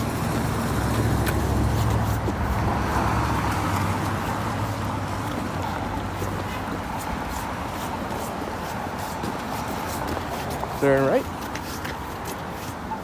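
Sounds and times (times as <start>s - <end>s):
car engine rumble: 0.0s - 7.0s.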